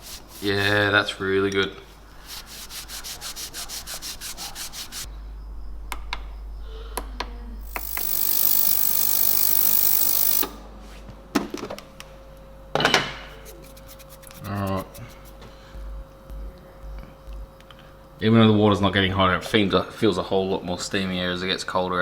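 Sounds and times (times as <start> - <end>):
rapid rubbing: 0.0 - 1.2, 1.8 - 5.1, 13.4 - 16.6
clicks: 7.0 - 10.6
loud steady hiss: 7.6 - 10.6.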